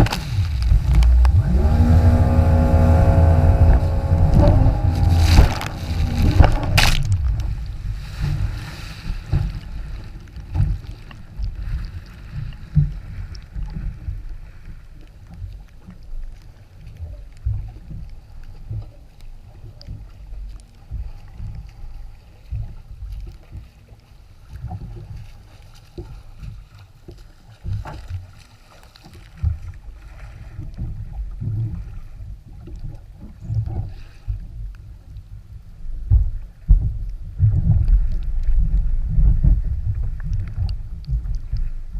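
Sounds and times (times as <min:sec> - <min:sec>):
jet ski thumping on waves: 0:00.0 - 0:14.2
jet ski rumble: 0:00.0 - 0:41.9.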